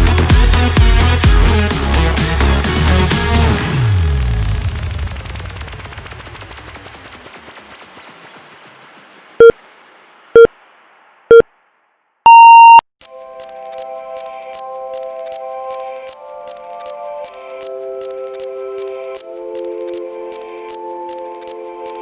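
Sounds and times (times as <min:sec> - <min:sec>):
background music: 0:00.0 - 0:04.6
longer higher beep: 0:12.3 - 0:12.8
timer short beeps: 0:12.3 - 0:12.8.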